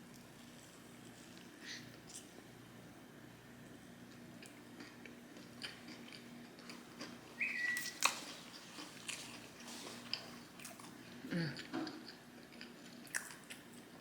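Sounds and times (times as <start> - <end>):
chewing and biting food: 4.1 - 14.0
high whistle-like tone: 7.4 - 8.0.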